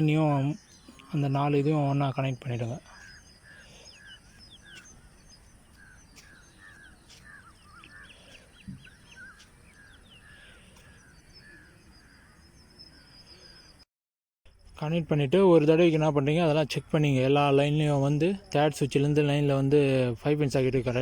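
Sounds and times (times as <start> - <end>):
small birds chirping: 0.0 - 13.8.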